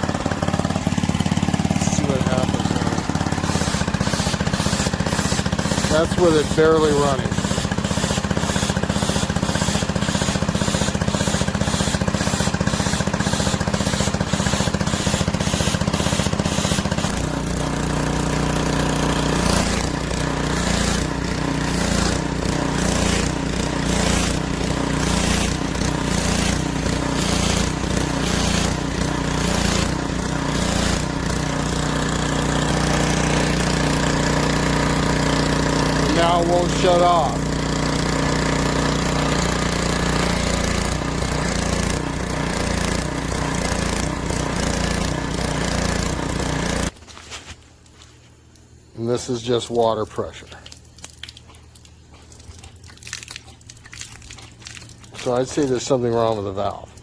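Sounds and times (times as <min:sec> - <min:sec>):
pressure washer engine running: 0:00.0 - 0:47.0, 0:54.3 - 0:57.0
water spraying: 0:00.0 - 0:57.0.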